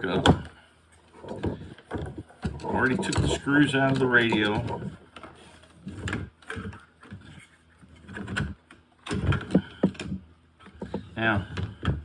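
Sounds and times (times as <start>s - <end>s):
plastic radio case knocks and clicks: 8.2s - 12.0s.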